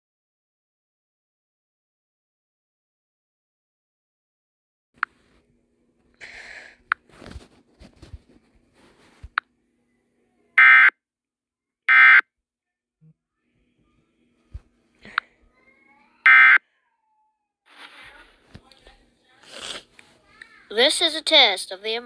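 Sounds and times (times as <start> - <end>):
electronic alert beeps: 10.6 - 10.9, 16.3 - 16.6.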